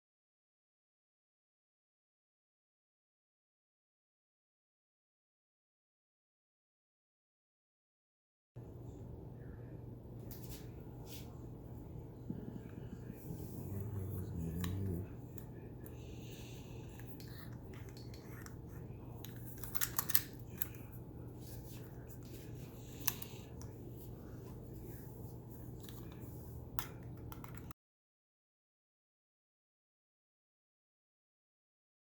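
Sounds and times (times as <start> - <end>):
steady low hum: 8.6 - 27.7
metal tool clicks and snips: 19.2 - 20.8.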